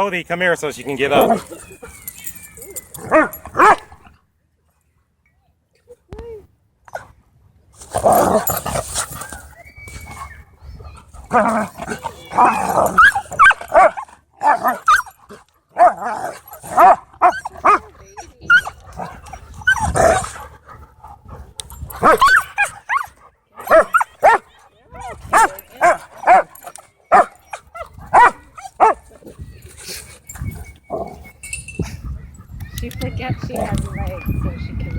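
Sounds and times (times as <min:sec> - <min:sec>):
dogs barking and yipping: 0:00.9 - 0:04.2, 0:07.8 - 0:34.9
dogs growling: 0:01.0 - 0:01.9, 0:07.8 - 0:09.4, 0:10.2 - 0:24.2, 0:30.0 - 0:31.3.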